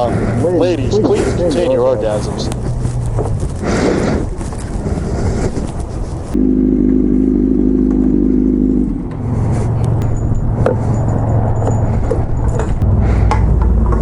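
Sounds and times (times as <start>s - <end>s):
motorcycle engine revving: 6.3s - 14.0s.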